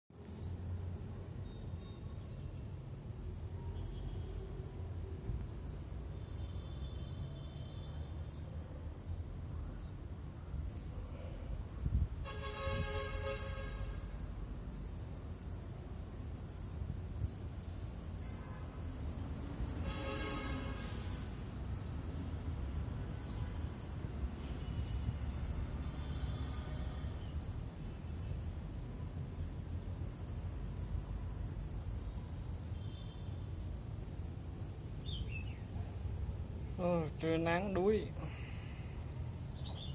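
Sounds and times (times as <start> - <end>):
bird chirping: 30.1 - 35.9, 39.4 - 39.9.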